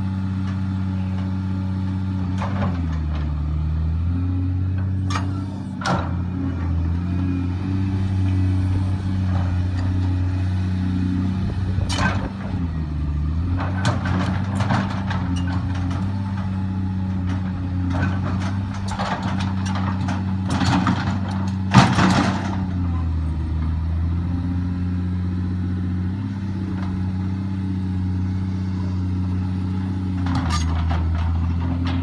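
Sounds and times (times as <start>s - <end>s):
excavator diesel engine running: 0.0s - 32.0s
metallic clanks and knocks: 30.2s - 32.0s.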